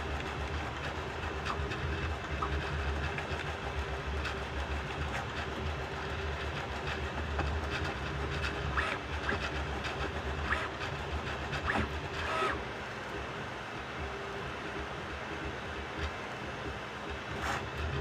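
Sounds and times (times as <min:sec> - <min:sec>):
three-d printer motor hum: 0:00.0 - 0:18.0
stepper motors whirring chirps: 0:11.6 - 0:12.6.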